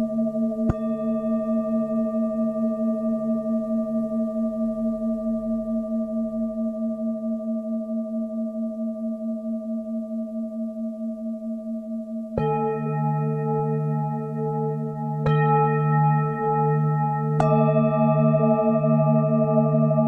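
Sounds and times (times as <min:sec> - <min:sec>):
singing bowls ringing: 0:00.0 - 0:06.0.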